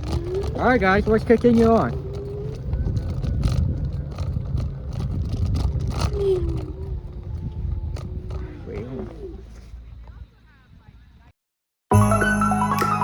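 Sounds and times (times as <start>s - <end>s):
clicks and rattles from bumps: 0.0s - 8.9s
wind rumbling on microphone: 0.0s - 11.3s.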